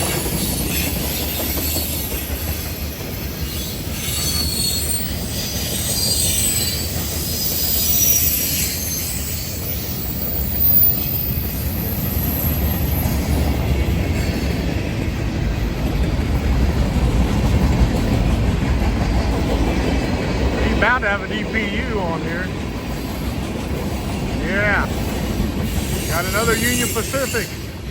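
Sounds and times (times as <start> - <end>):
train wheels rumbling on rail: 0.0 - 27.9
wheel flanges squealing: 0.5 - 13.4, 24.9 - 27.7.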